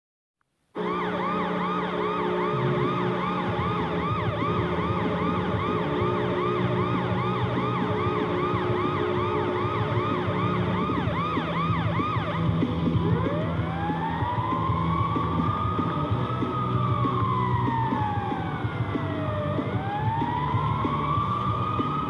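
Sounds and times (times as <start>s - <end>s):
low horn blast: 0.8s - 12.5s
warbling siren: 0.8s - 22.0s.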